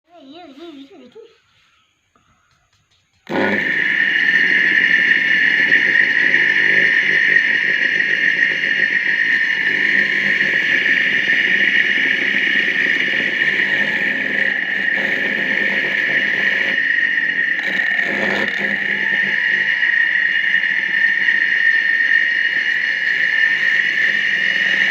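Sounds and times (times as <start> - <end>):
electric fan motor whining: 2.4 - 24.9.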